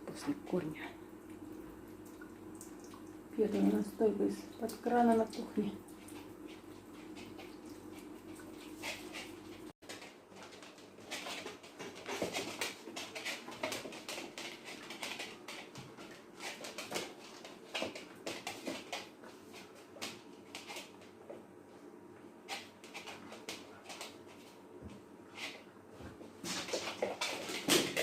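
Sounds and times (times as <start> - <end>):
paws scrabbling on hard floor: 5.1 - 21.5, 22.4 - 28.0.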